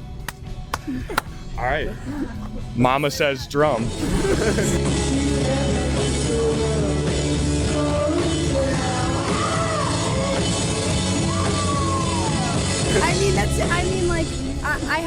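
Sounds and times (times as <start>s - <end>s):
rock music: 0.0s - 15.0s
person singing: 4.4s - 10.9s.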